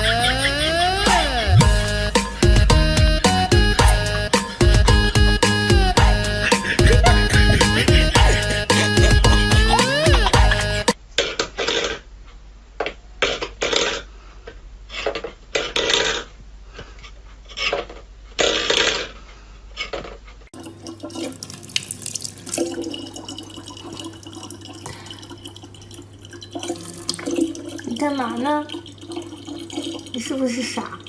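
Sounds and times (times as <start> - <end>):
water splashing: 20.6 - 31.0.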